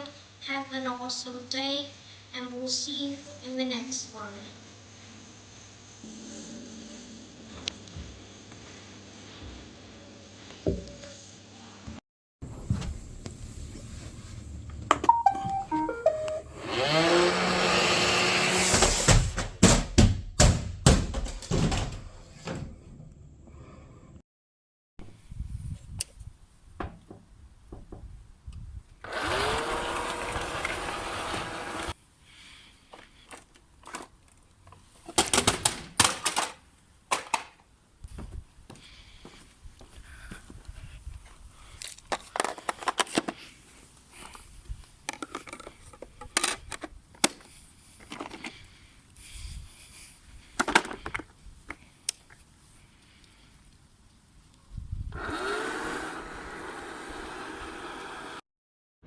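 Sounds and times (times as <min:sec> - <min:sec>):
robot vacuum beeping tones: 0:15.1 - 0:17.0
suction motor whine: 0:16.5 - 0:18.8, 0:29.1 - 0:31.9
vacuum tumbling down stairs: 0:18.4 - 0:22.7.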